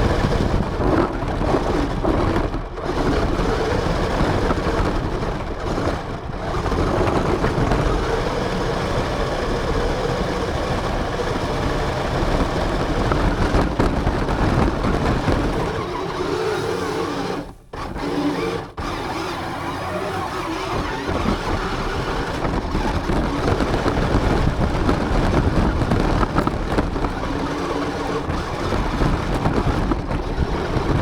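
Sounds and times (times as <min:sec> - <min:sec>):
tyre and wind noise: 0:00.0 - 0:31.0
toy car motor whirring: 0:15.0 - 0:24.3.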